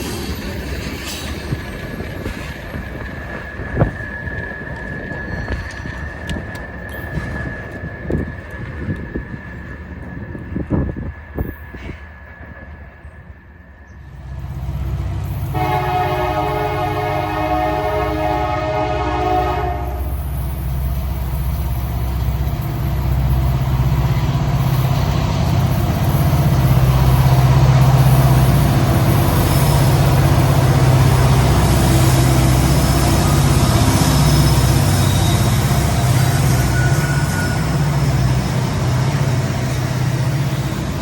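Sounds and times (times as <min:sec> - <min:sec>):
locomotive engines running: 0:00.0 - 0:11.9, 0:19.9 - 0:41.0
train wheels on rails: 0:00.0 - 0:41.0
locomotive air horn: 0:15.4 - 0:20.3.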